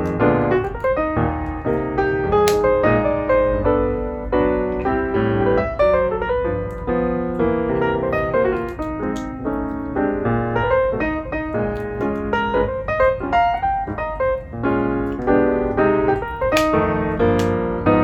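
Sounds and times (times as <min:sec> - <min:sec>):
piano music: 0:00.0 - 0:18.0.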